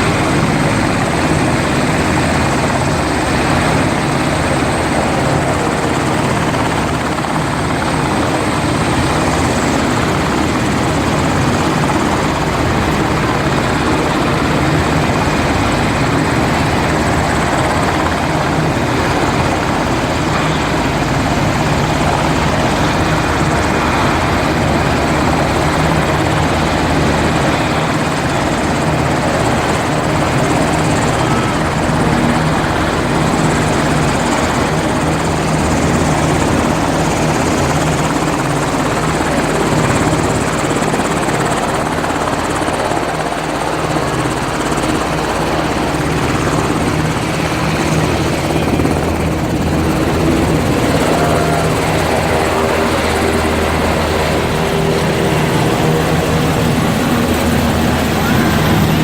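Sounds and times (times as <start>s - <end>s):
helicopter rotor and engine: 0.0s - 59.0s.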